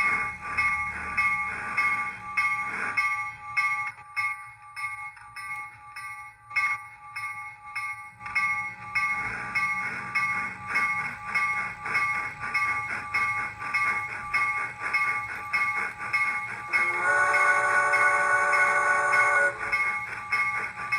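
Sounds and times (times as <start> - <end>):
steam locomotive chuffing: 0.0 - 20.9
locomotive whistle blast: 16.7 - 19.9.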